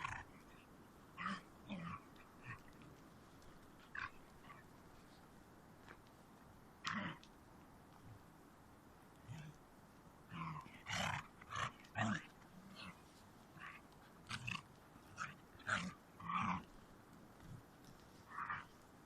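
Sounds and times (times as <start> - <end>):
dog growling and yelping: 0.0 - 0.6, 10.3 - 16.7.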